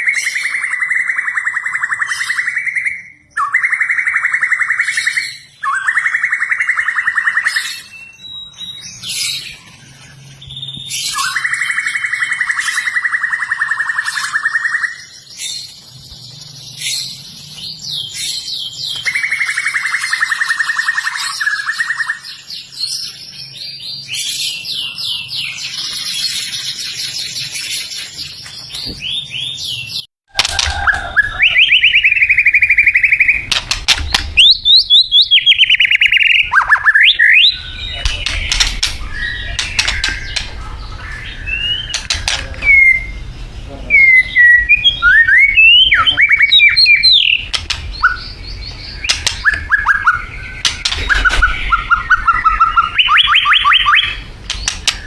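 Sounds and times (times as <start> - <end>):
bird singing whistled trills: 0.0 - 55.0.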